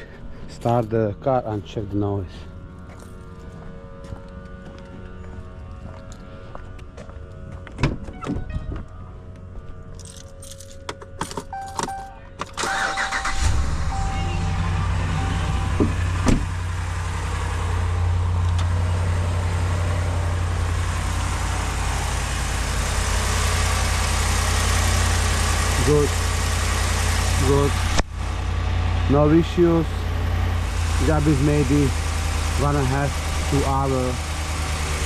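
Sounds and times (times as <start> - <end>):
car engine starting and idling: 9.9 - 35.0.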